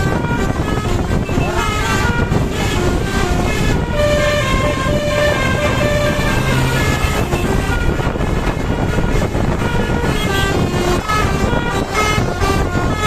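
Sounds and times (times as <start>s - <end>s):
bus horn playing a melody: 0.0s - 13.0s.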